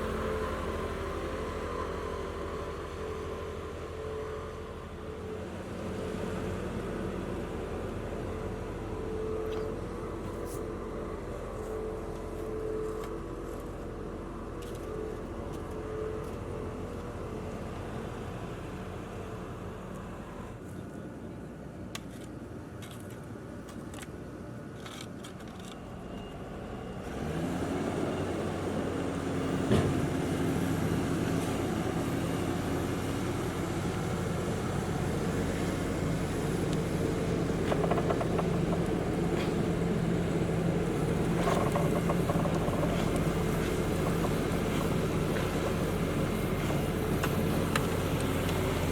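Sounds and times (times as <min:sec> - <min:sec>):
heavy machinery diesel engine running: 0:00.0 - 0:17.4, 0:27.7 - 0:48.9.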